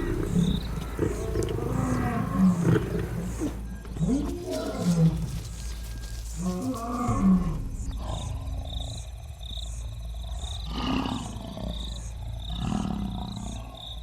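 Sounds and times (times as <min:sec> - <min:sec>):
lion roaring: 0:00.0 - 0:05.6.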